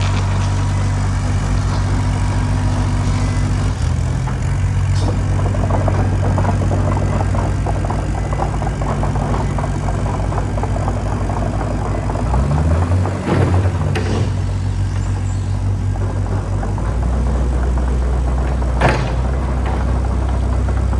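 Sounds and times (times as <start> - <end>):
diesel engine running: 0.0 - 20.9
light clattering: 0.0 - 20.9.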